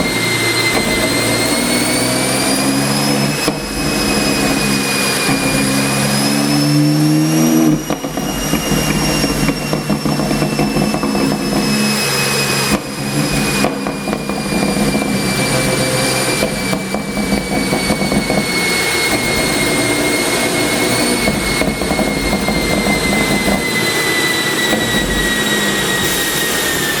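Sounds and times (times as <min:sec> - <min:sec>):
car engine running: 0:00.0 - 0:26.8
high whine falling in pitch: 0:00.0 - 0:27.0.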